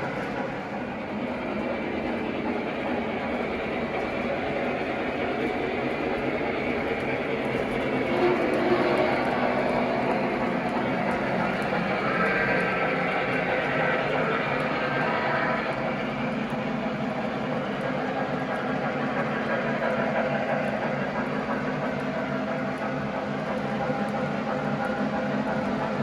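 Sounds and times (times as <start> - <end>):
model train motor hum: 0.2 - 25.6.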